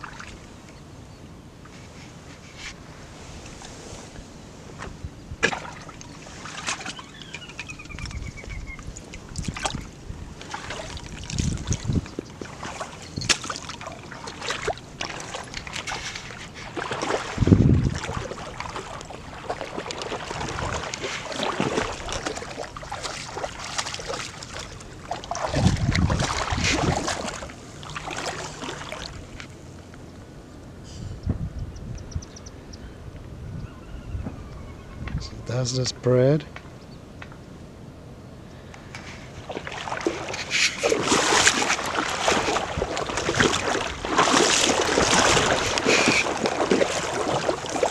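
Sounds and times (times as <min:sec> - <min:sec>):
light water sounds: 0:00.0 - 0:00.8, 0:01.6 - 0:30.2, 0:38.5 - 0:47.9
wind buffeting microphone: 0:02.8 - 0:13.6, 0:14.6 - 0:27.6, 0:31.0 - 0:35.5, 0:39.0 - 0:47.9.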